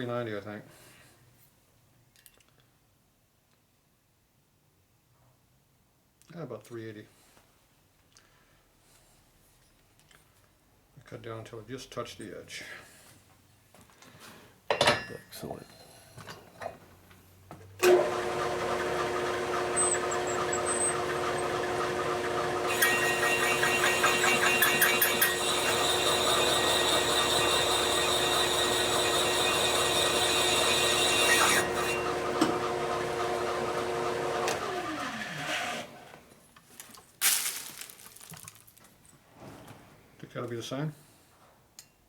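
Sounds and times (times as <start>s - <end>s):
electric motor humming: 17.8s - 36.1s
metal cutting noise: 17.8s - 36.1s.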